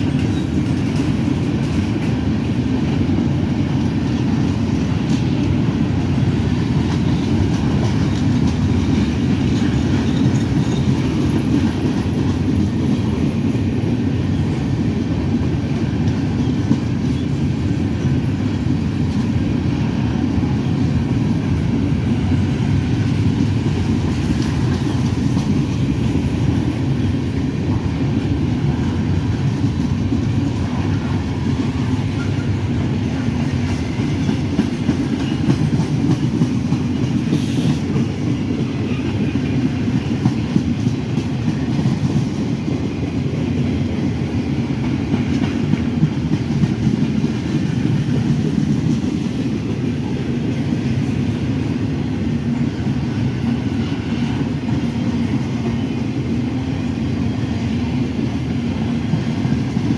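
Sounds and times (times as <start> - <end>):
freight train wheels rumbling: 0.0 - 59.9.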